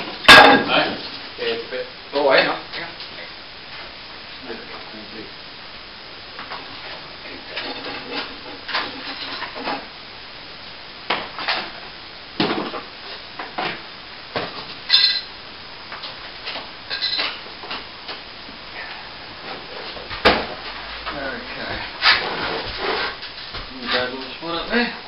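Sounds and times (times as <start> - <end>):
metallic clink: 14.9 - 15.3, 16.9 - 17.3.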